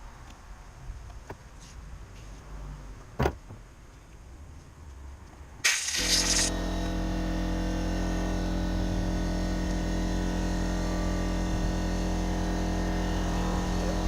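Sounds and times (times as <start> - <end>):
motor humming: 5.7 - 14.0.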